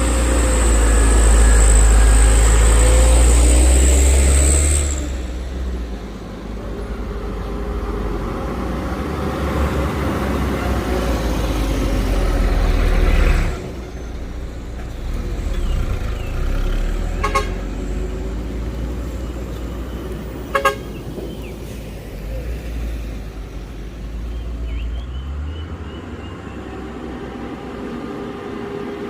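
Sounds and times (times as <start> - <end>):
truck engine rumbling: 0.0 - 29.0
vehicle horn toots: 17.2 - 17.7, 20.5 - 21.0.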